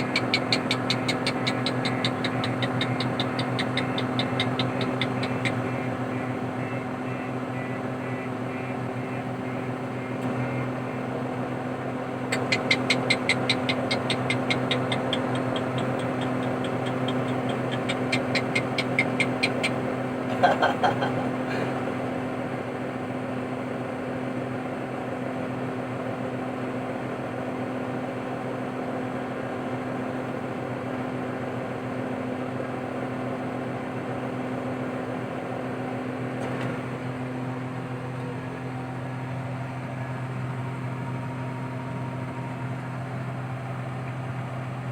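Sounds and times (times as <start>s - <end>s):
motor humming: 0.0s - 21.8s.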